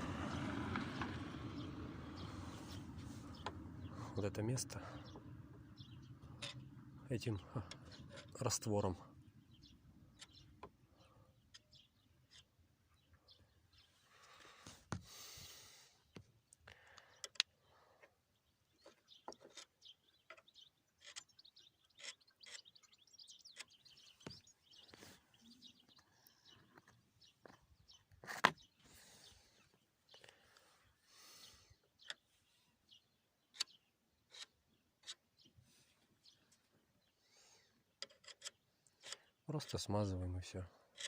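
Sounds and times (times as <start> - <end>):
faint bird chirps: 15.4 - 41.0.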